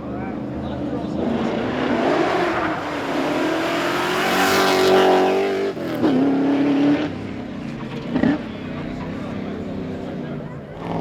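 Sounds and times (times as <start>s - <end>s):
engine accelerating hard: 0.6s - 11.0s.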